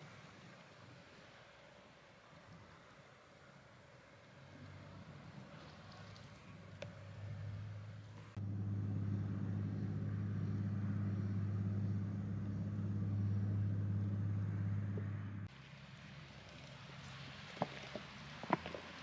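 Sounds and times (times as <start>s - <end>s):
engine idling: 6.3s - 18.5s.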